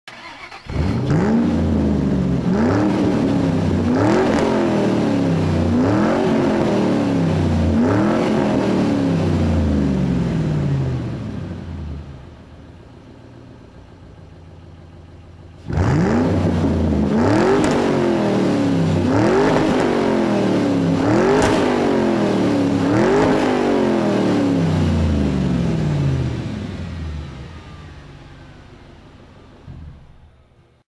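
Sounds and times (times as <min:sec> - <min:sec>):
engine revving: 0:00.1 - 0:12.2, 0:15.6 - 0:28.8.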